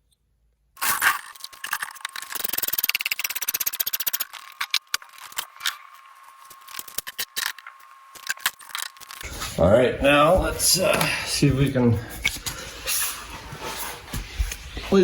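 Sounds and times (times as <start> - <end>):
fast run of sharp clicks: 1.0 - 5.8.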